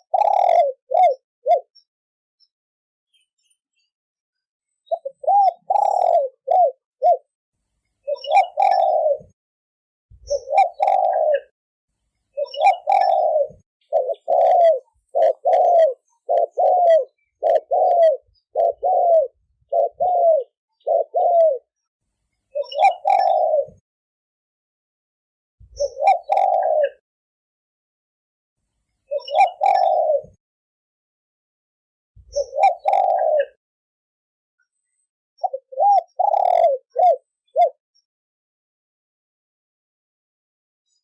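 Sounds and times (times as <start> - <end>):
dove cooing: 0.0 - 1.7, 4.9 - 7.3, 8.1 - 9.4, 10.2 - 11.5, 12.4 - 21.7, 22.6 - 23.8, 25.7 - 27.0, 29.1 - 30.4, 32.2 - 33.6, 35.4 - 37.8.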